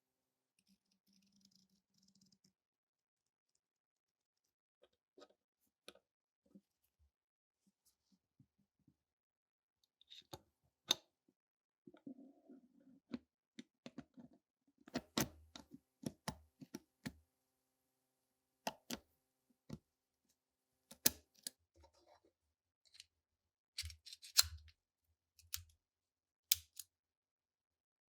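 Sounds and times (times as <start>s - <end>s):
metallic clicks of pistol parts: 23.8s - 24.6s, 26.5s - 26.8s.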